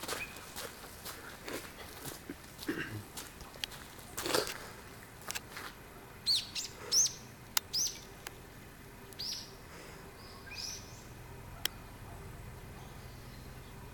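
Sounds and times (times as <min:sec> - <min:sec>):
small bird chirping: 0:06.2 - 0:08.4, 0:09.0 - 0:09.6, 0:10.2 - 0:13.9.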